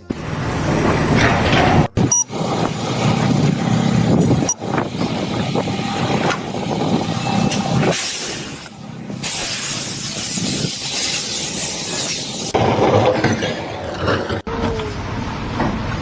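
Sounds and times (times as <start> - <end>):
loud rushing hiss: 4.9 - 12.6.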